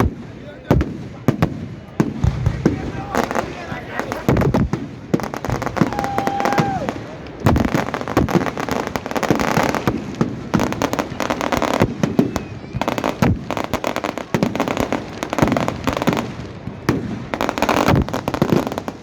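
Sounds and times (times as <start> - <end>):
fireworks banging and crackling: 0.0 - 19.0.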